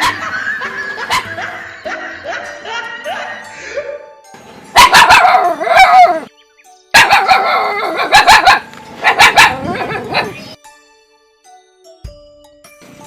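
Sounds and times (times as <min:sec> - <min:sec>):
dog barking: 0:01.1 - 0:01.6, 0:04.8 - 0:06.2, 0:07.0 - 0:10.4.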